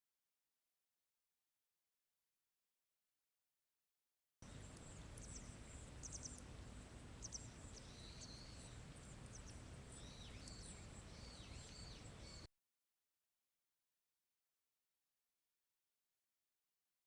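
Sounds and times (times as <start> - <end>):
low steady rumble: 4.4 - 12.5
small birds chirping: 4.4 - 12.5
dipping arching bird calls: 7.2 - 12.5.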